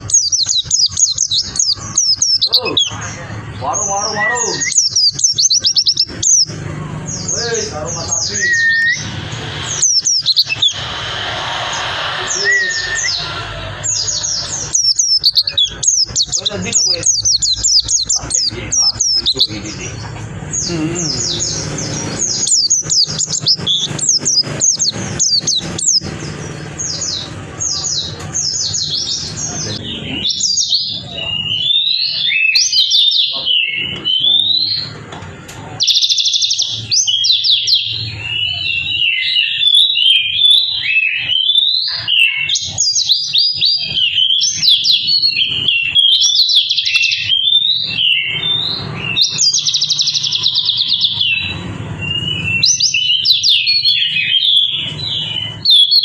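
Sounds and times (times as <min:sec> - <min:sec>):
bird twittering song: 0:00.0 - 0:56.0.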